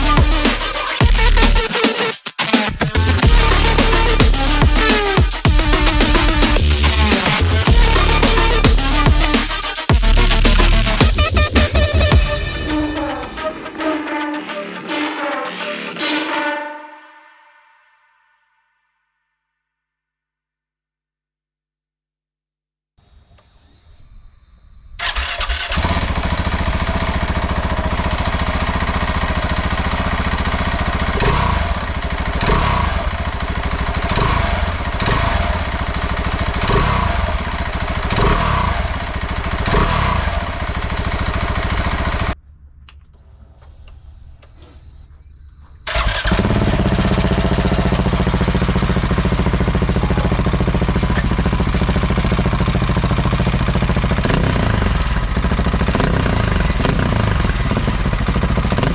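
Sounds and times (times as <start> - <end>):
motorcycle engine revving and idling: 0.0 - 1.9, 2.8 - 13.6, 25.0 - 42.4, 45.8 - 58.9.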